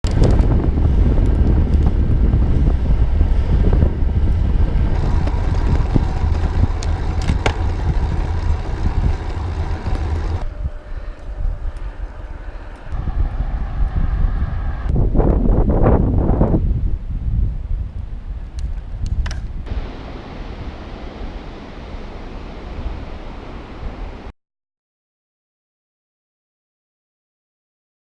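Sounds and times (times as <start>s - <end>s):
bicycle clicks and rattles: 0.0s - 2.0s, 4.9s - 10.4s
wind buffeting microphone: 0.0s - 24.3s.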